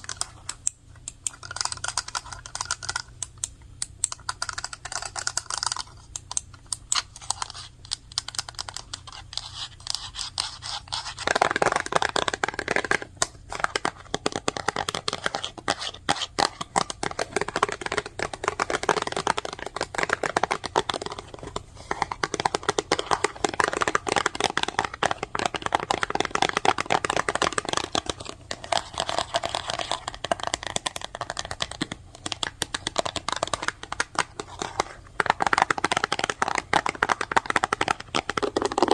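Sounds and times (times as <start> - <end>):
fast typing on keyboard: 16.9 - 21.4, 22.0 - 28.2, 29.0 - 38.9.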